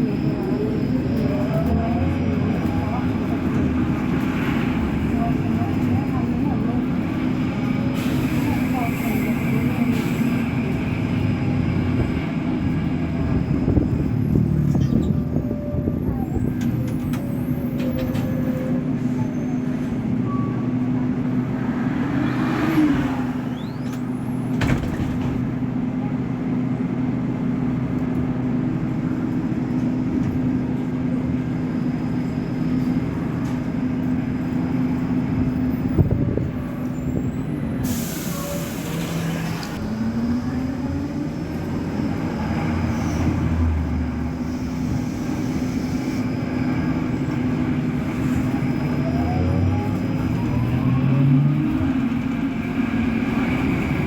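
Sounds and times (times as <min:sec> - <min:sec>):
bus engine droning: 0:00.0 - 0:54.0
air brake hiss: 0:37.8 - 0:39.4.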